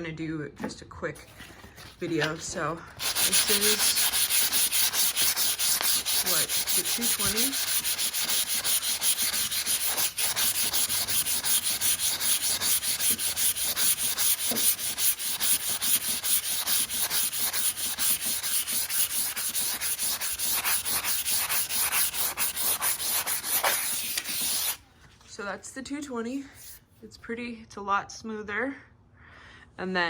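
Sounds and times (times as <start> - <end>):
sandpaper rubbing on wood: 1.9 - 24.8.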